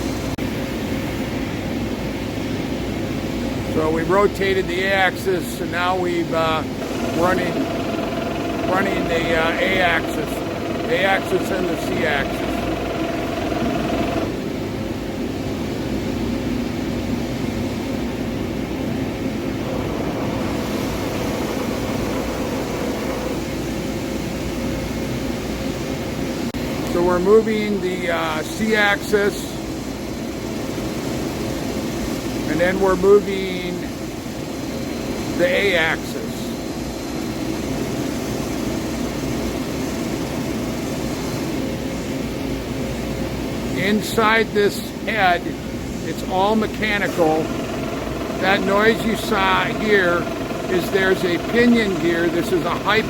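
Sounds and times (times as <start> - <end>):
milling head gear hum: 6.0 - 14.8, 18.8 - 24.2, 43.6 - 53.0.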